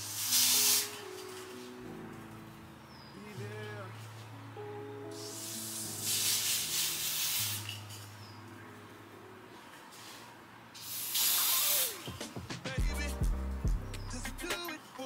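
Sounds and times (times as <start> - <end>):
aerosol spray hissing: 0.0 - 1.0, 5.1 - 7.8, 10.8 - 12.1
quiet background music: 0.0 - 15.0.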